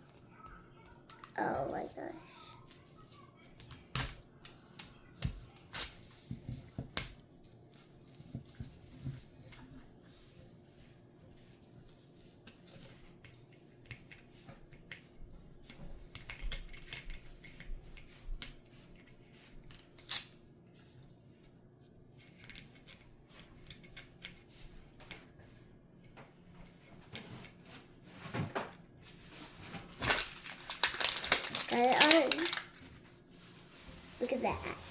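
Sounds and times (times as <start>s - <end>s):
hands handling plastic packaging: 29.1s - 34.9s.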